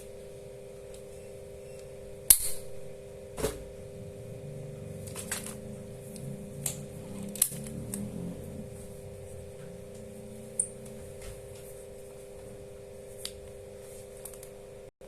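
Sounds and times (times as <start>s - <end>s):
steady hum: 0.0s - 14.9s
injector pen firing snap: 2.2s - 2.7s, 5.1s - 8.1s.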